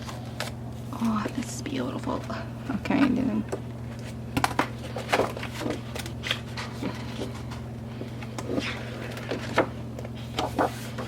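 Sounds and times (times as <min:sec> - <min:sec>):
steady low hum: 0:00.0 - 0:11.0
paper rustling: 0:08.5 - 0:11.0.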